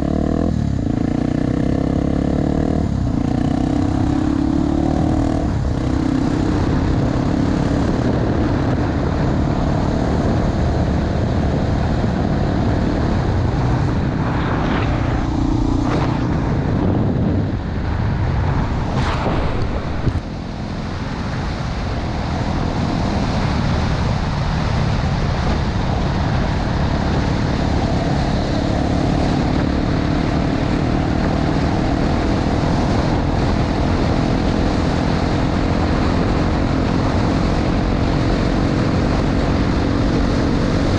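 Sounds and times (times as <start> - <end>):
motorcycle engine running: 0.0 - 18.9
wind noise on microphone: 0.0 - 40.9.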